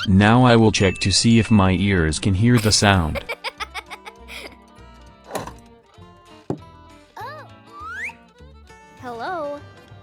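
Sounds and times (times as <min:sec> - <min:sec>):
background music: 0:02.6 - 0:10.0.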